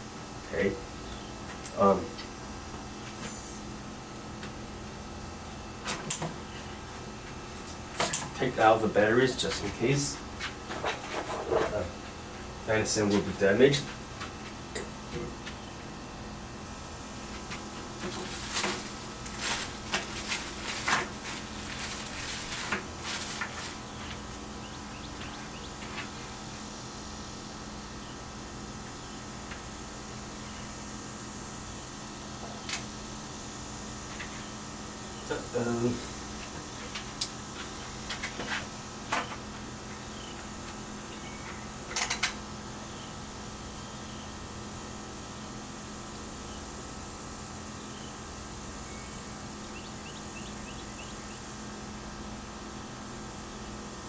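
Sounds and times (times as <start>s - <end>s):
low electrical hum: 0.0s - 54.0s
scrapes rustles and clicks: 9.4s - 12.2s, 17.3s - 24.5s, 36.0s - 40.8s
tools clicking and tapping on workbench: 41.5s - 42.4s.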